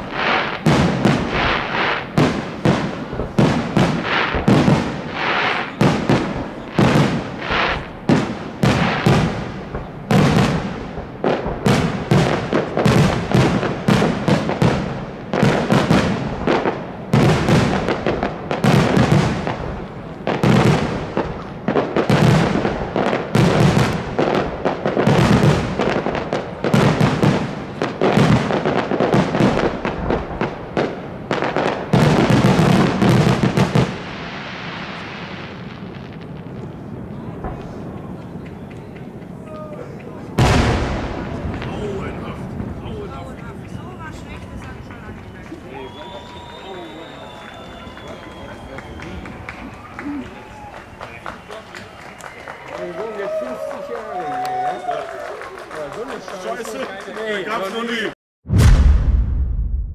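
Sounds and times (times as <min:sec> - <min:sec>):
fireworks bursting: 0:00.0 - 0:59.9
rumbling echoes: 0:58.5 - 0:59.9.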